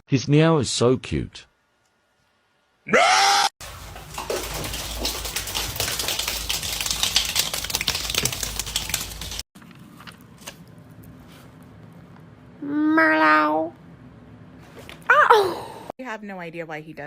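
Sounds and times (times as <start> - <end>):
rapid clicking and clattering: 3.6 - 9.5.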